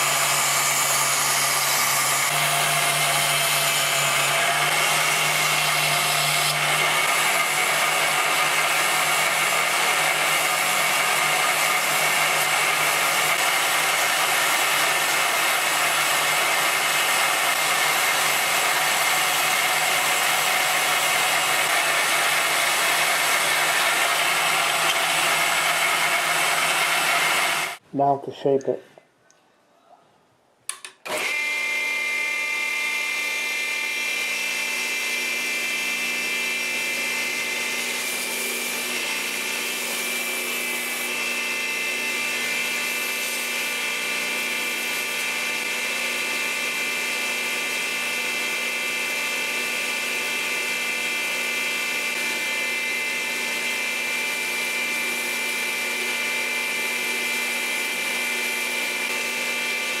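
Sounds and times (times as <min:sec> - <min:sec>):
power tool whining: 0:00.0 - 0:27.8, 0:31.0 - 1:00.0.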